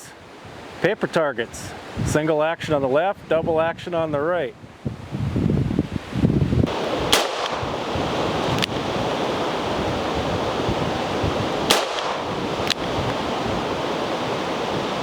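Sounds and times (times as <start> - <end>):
strong wind on microphone: 1.5 - 15.0
sharp clicks: 11.7 - 12.8.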